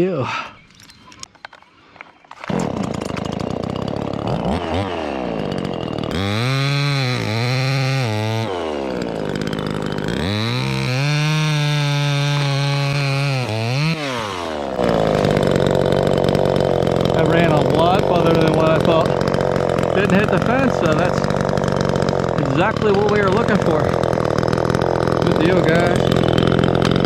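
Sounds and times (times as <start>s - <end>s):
chainsaw cutting branch: 2.3s - 27.0s.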